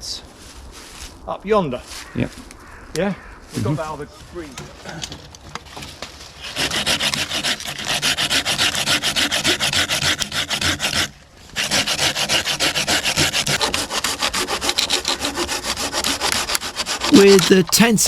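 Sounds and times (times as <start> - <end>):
hand saw cutting wood: 6.4 - 17.1.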